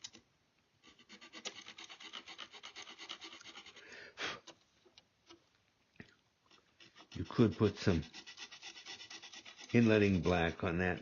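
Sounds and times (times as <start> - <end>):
hand file rasping on wood: 0.8 - 3.9, 6.5 - 11.0.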